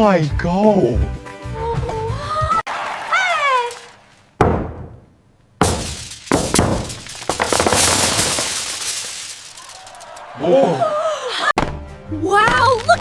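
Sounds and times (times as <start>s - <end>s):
chocolate shell cracking and crashing: 5.7s - 10.2s.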